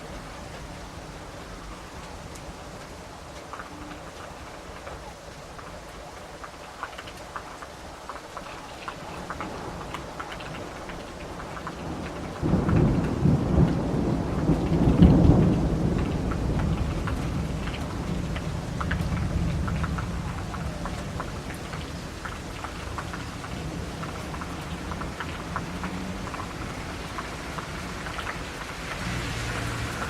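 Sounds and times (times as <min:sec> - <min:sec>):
rain with drops ticking: 0:00.0 - 0:30.0
thunder rumbling: 0:09.0 - 0:30.0.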